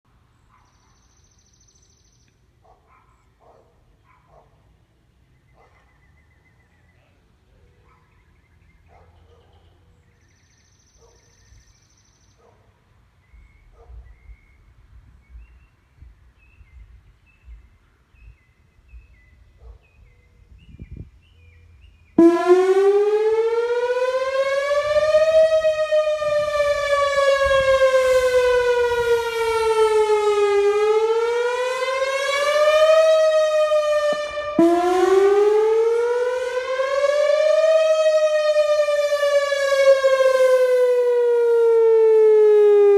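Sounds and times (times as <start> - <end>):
electronic siren wailing: 22.2 - 42.9.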